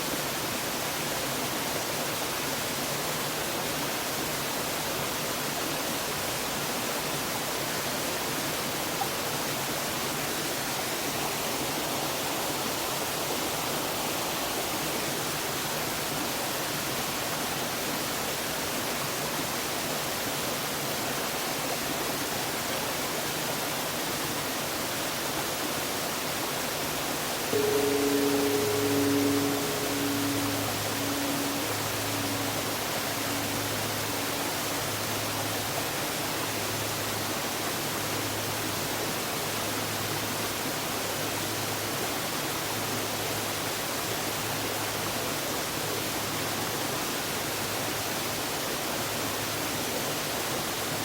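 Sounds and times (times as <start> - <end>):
small waterfall rushing: 0.0 - 51.0
large temple bell struck: 27.6 - 35.6.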